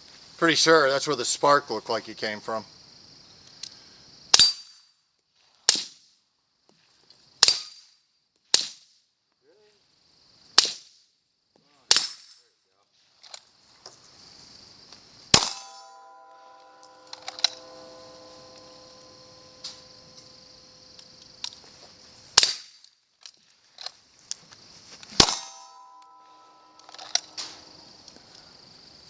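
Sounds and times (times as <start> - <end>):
insects chirring: 0.0 - 8.4, 9.1 - 12.0, 12.6 - 29.0
pistol shots: 15.3 - 16.1, 22.4 - 22.7, 25.2 - 26.0.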